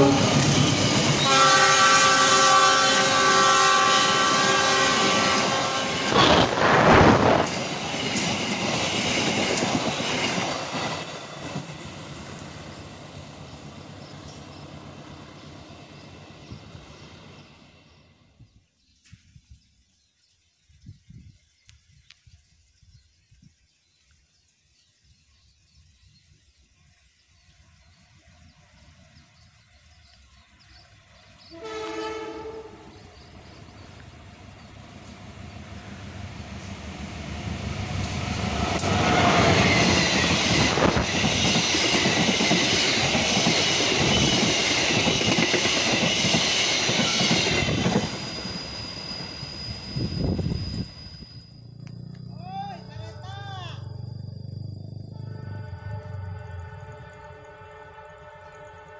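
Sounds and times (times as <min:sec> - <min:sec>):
train horn: 0:00.0 - 0:00.6, 0:01.2 - 0:07.4, 0:31.4 - 0:33.3, 0:55.1 - 0:58.9
train wheels on rails: 0:00.0 - 0:18.1, 0:26.0 - 0:52.3.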